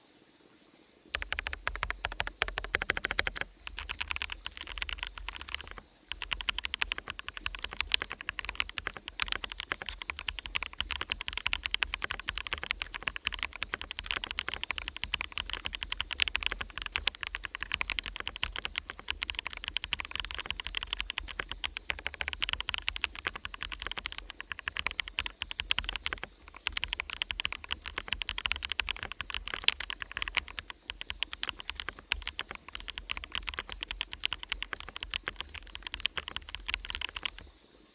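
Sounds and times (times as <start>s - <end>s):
forest ambience: 0.0s - 37.9s
mechanical keyboard typing: 1.2s - 37.5s.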